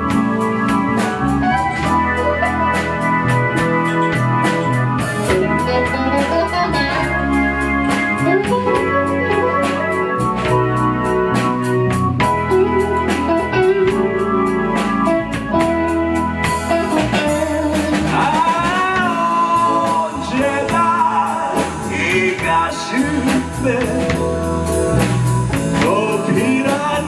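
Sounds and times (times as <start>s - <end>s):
lead melody with bending notes: 0.0s - 27.0s
live rock band playing: 0.0s - 27.0s.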